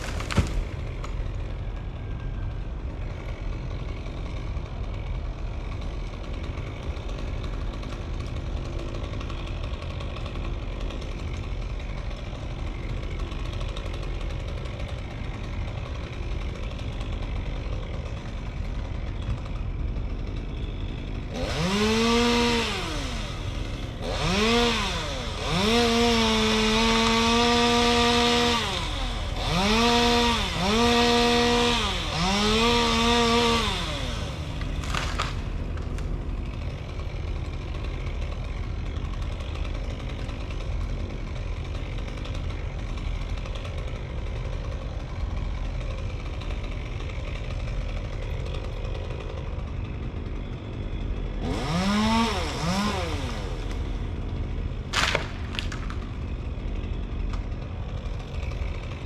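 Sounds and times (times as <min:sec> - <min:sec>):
chainsaw revving and idling: 0:00.0 - 0:59.0.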